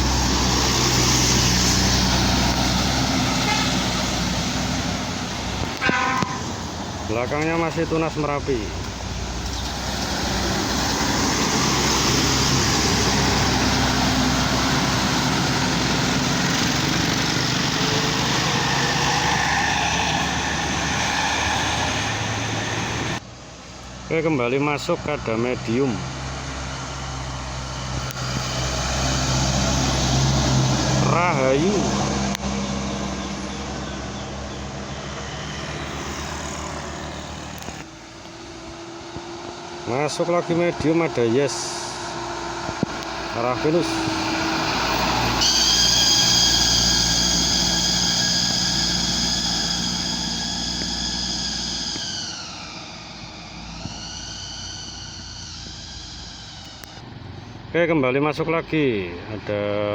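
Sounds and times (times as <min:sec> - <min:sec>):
bus engine drone: 0:00.0 - 0:59.9
road noise: 0:00.0 - 0:59.9.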